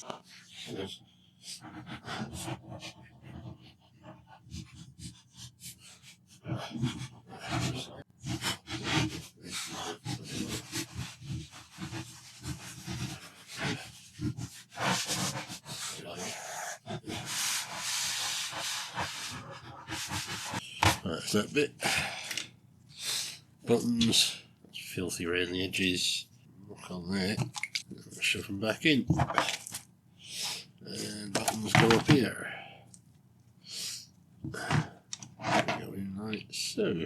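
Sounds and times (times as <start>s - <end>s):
scrubbing on plastic casing: 31.2s - 32.1s.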